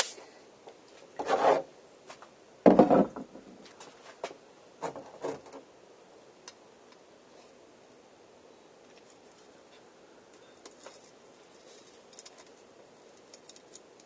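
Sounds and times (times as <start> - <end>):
tools knocking on workbench: 2.7 - 3.5.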